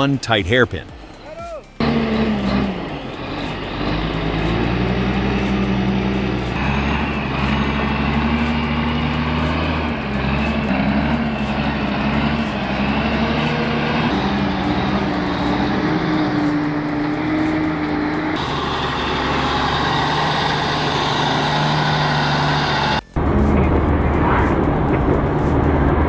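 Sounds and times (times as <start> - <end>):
truck diesel engine labouring: 0.0 - 26.0.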